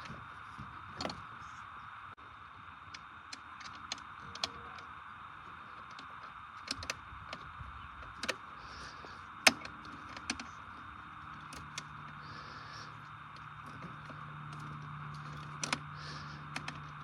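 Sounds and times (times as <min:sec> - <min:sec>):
hand tools clicking and knocking: 0:05.8 - 0:17.0.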